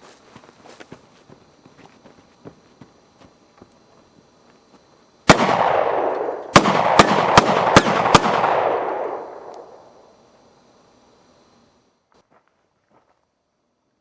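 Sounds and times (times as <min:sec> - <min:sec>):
pistol shots echoing: 0:05.3 - 0:09.8.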